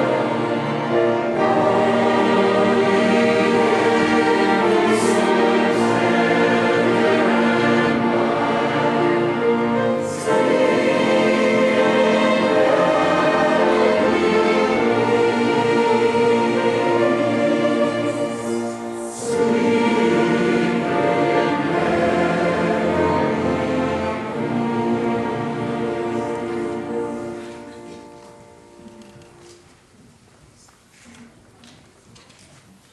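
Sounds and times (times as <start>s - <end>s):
choir singing held chords: 0.0s - 28.8s
instrumental accompaniment: 0.0s - 29.8s.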